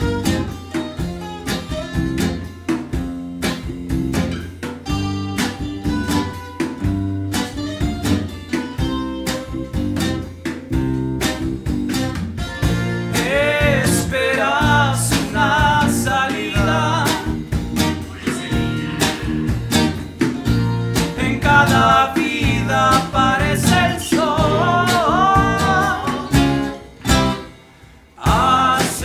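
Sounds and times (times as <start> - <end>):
bass and drums: 0.0 - 29.0
strummed acoustic guitar: 0.0 - 29.0
person singing with vibrato: 13.1 - 19.9, 21.0 - 26.8, 28.2 - 29.0.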